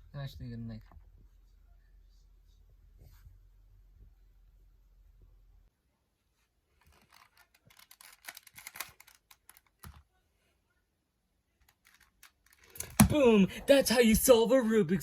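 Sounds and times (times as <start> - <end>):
puzzle cube clicking: 7.0 - 10.0.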